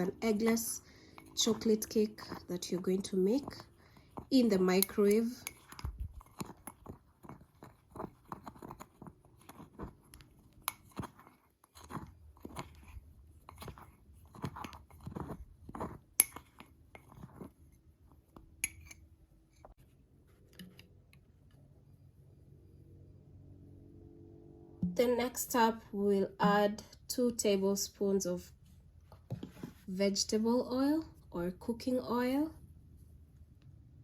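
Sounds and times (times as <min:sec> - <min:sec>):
spoon scraping in a mug: 0:00.0 - 0:17.8, 0:18.6 - 0:19.8.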